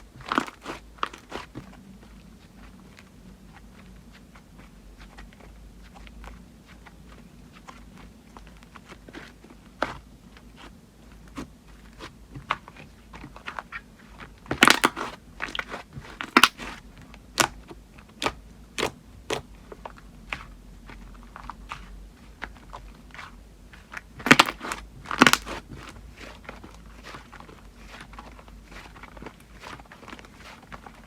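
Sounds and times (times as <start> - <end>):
slime clicking and popping: 14.5 - 15.6, 16.2 - 16.7, 24.2 - 25.6.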